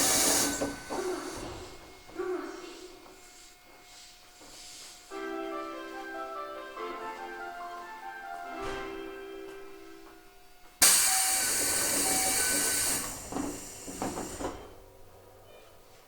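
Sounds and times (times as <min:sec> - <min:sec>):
train compressed air hiss: 0:00.0 - 0:01.9, 0:10.8 - 0:14.8
melody of held tones: 0:05.1 - 0:10.3.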